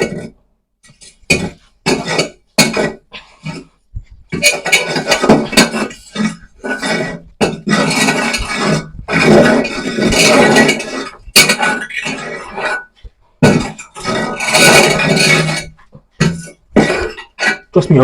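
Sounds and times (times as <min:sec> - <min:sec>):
charcoal lumps clinking and rattling: 0:04.3 - 0:18.0.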